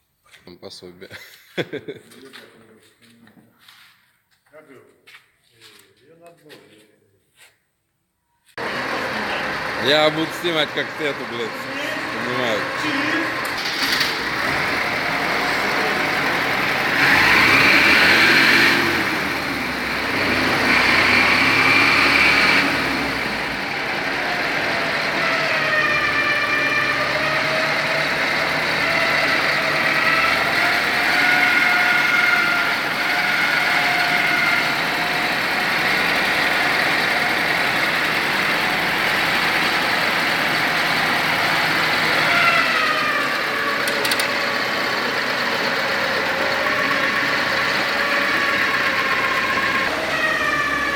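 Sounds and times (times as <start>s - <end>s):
motor whining: 41.5s - 44.8s.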